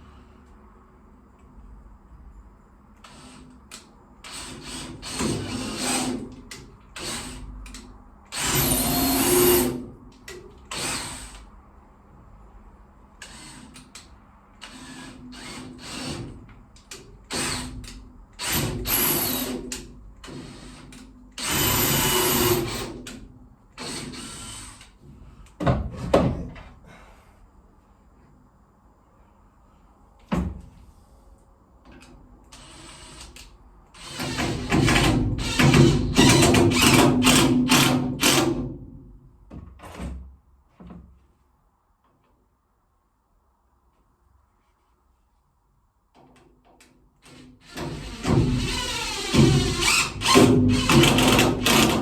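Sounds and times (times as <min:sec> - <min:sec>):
cordless drill driving screws: 0:04.3 - 0:06.2, 0:08.3 - 0:09.8, 0:18.4 - 0:23.0, 0:23.8 - 0:24.9, 0:34.0 - 0:38.6, 0:47.3 - 0:52.0.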